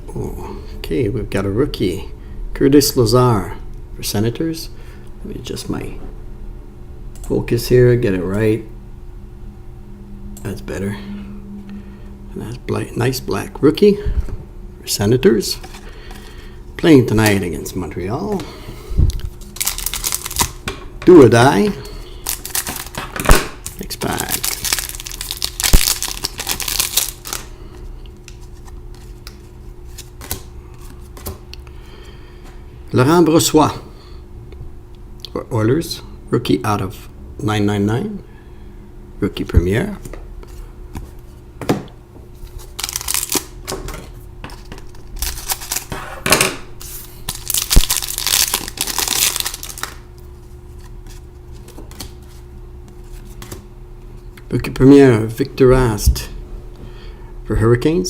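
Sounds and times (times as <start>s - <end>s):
cards rustling and clicking: 19.2s - 20.6s, 22.2s - 27.5s, 28.2s - 31.4s, 42.4s - 46.0s, 46.8s - 53.7s
wrapper tearing and crinkling: 19.4s - 20.6s, 22.2s - 27.5s, 42.4s - 43.8s, 44.5s - 46.0s, 46.8s - 50.0s.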